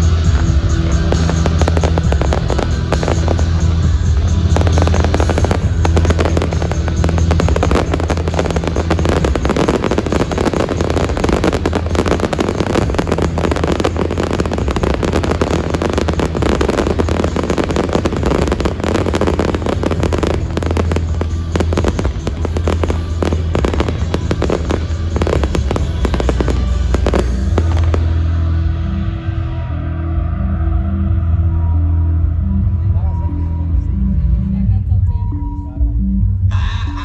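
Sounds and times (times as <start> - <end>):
fireworks bangs and crackles: 0.0 - 28.3
music over loudspeakers: 0.0 - 37.0.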